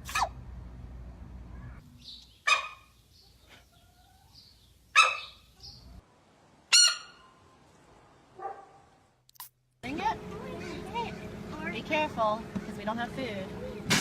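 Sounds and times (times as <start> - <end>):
animal sneezes: 0.0 - 0.4.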